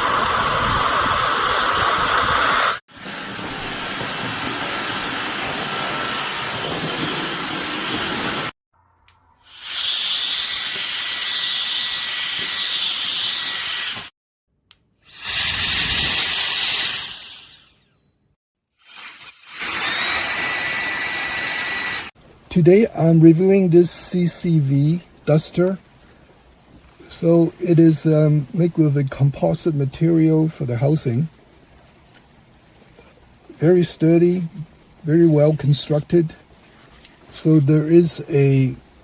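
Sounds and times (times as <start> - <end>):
electric air duster blowing: 0.0 - 8.5, 9.4 - 14.1, 15.1 - 17.8, 19.5 - 22.2.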